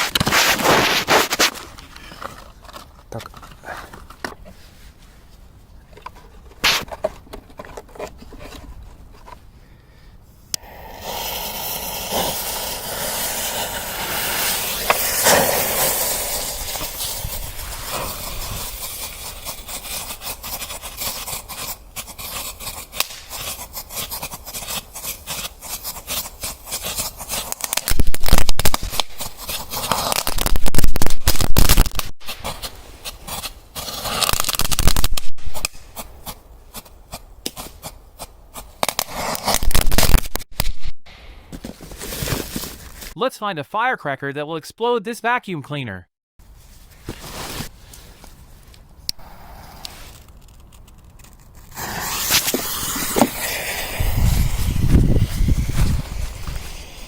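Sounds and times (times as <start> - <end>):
firecracker fuse hissing: 0.0 - 1.6, 10.6 - 40.8, 49.1 - 57.0
firecrackers crackling pops: 0.0 - 1.8, 6.6 - 7.0, 10.6 - 41.2, 49.1 - 57.0.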